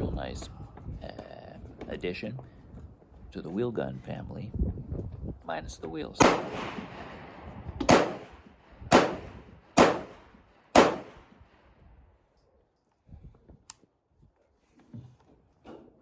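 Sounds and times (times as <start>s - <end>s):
pistol shots with echo: 6.2s - 11.4s
faint sharp click: 13.6s - 13.8s.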